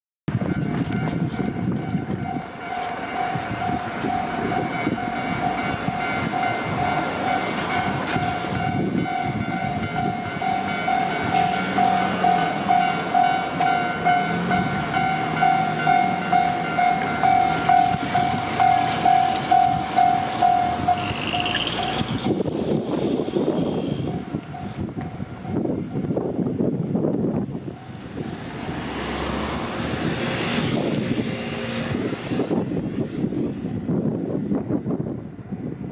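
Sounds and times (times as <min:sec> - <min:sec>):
railroad crossing warning bell: 0:00.3 - 0:26.2
freight train passing: 0:00.3 - 0:35.9.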